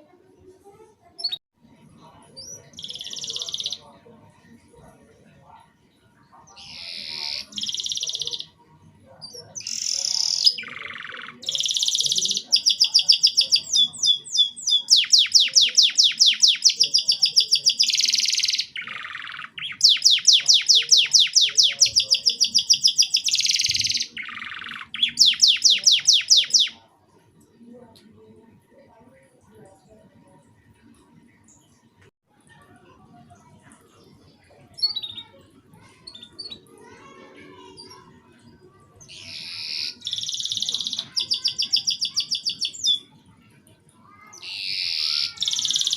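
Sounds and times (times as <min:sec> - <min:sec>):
canary singing with trills: 0:02.0 - 0:04.1, 0:06.4 - 0:26.9, 0:34.4 - 0:43.4, 0:44.1 - 0:45.9.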